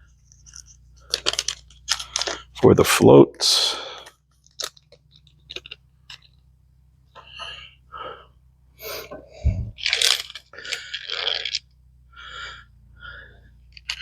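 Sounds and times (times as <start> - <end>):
packaging crunching and rustling: 0.3 - 2.5, 9.8 - 11.6.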